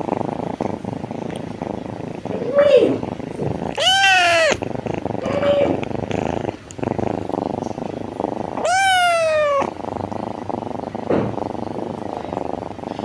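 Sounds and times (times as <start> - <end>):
kitten purring: 0.0 - 13.0
kitten meowing: 3.8 - 4.6, 8.6 - 9.8.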